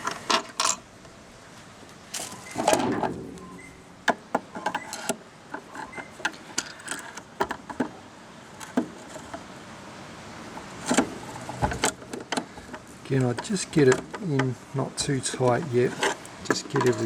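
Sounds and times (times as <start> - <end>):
handling rustle: 1.5 - 4.0, 10.5 - 17.0.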